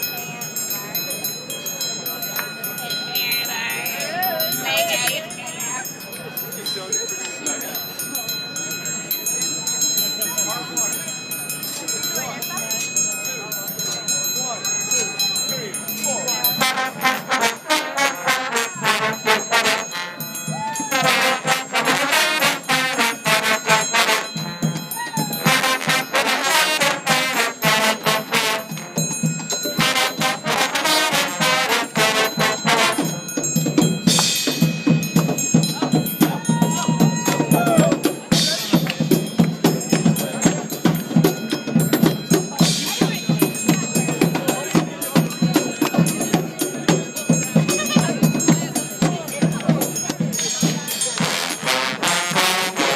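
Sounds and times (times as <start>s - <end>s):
drums and percussion: 0.0s - 52.9s
trombone choir playing: 16.6s - 20.2s, 20.9s - 24.4s, 25.5s - 28.8s, 29.8s - 33.1s, 51.2s - 52.9s.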